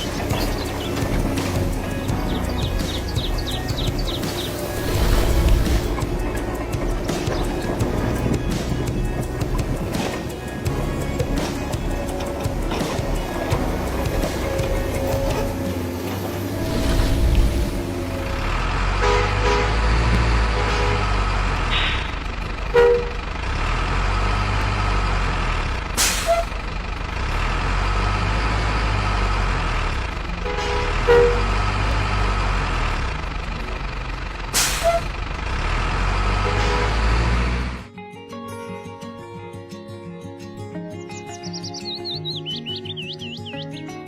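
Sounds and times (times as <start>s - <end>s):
truck engine rumbling: 0.0s - 37.9s
short sharp air hisses: 26.0s - 26.5s, 34.6s - 35.0s.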